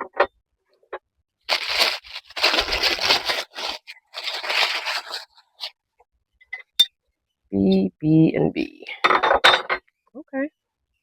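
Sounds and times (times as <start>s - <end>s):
packaging crinkling and rustling: 1.5s - 5.8s.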